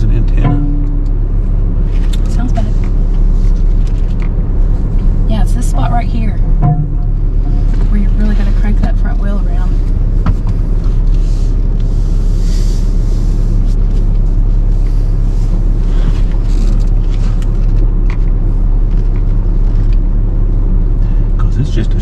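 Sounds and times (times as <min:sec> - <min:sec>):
truck engine low rumble: 0:00.0 - 0:22.0.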